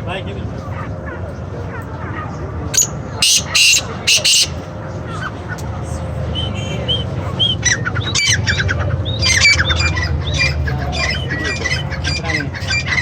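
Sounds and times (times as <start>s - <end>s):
birds squawking: 1.7s - 5.4s, 6.4s - 13.0s.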